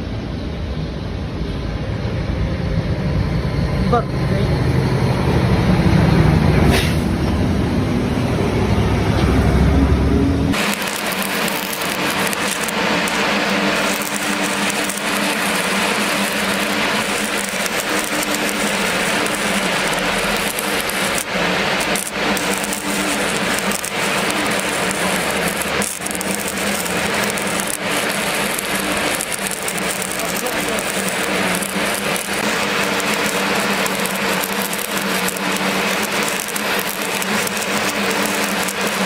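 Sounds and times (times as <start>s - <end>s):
low hum: 0.0s - 39.0s
arc welding hiss and crackle: 10.5s - 39.0s.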